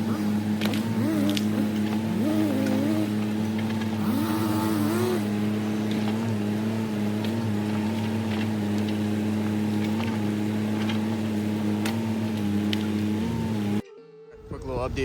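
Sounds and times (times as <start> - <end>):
diesel engine running: 0.0 - 13.8.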